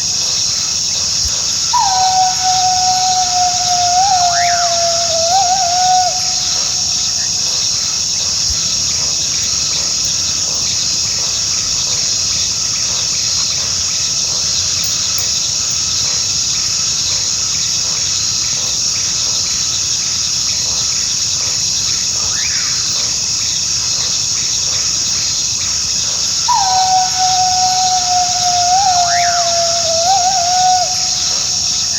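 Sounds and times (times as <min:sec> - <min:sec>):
insect chorus: 0:00.0 - 0:31.9
coyote howling: 0:01.6 - 0:06.8, 0:26.4 - 0:31.7
faint howls: 0:01.6 - 0:06.9, 0:26.4 - 0:31.9.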